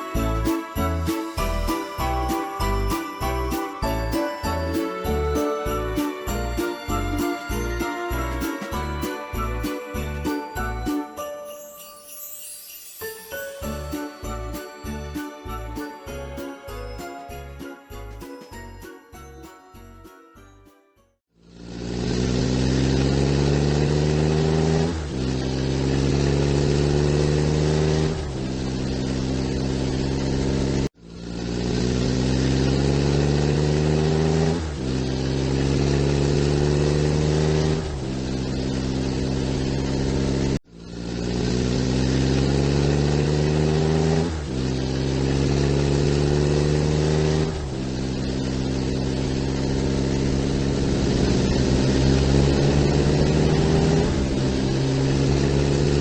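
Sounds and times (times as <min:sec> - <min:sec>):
engine accelerating through gears: 0:21.4 - 0:56.0.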